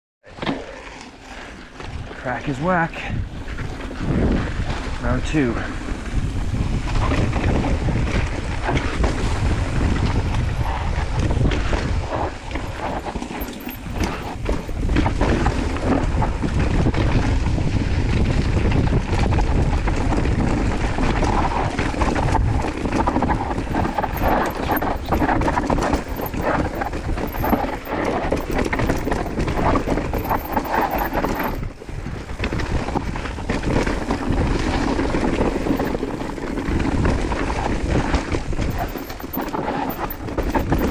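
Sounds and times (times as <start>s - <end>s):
bike tyres rolling on dirt: 0.6s - 40.9s
wind buffeting microphone: 1.8s - 40.9s
bike rattles and knocks: 5.7s - 17.2s, 20.0s - 40.9s.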